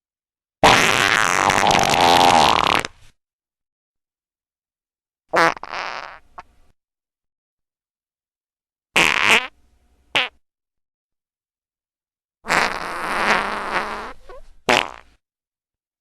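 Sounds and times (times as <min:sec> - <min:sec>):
fart sound effects: 0:00.6 - 0:03.0, 0:05.3 - 0:06.5, 0:09.0 - 0:10.4, 0:12.5 - 0:15.2.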